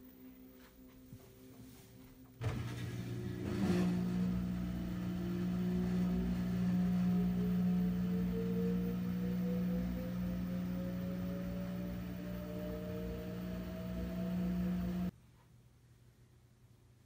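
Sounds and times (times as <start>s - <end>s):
washer tone rising in pitch: 2.4s - 15.1s
washing machine loud hum: 2.4s - 15.1s.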